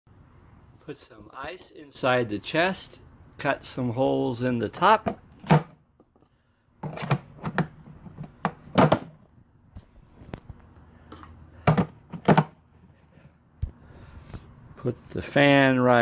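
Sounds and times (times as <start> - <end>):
plastic ice chest knocks and thumps: 5.1 - 5.8, 6.8 - 9.2, 11.6 - 12.6.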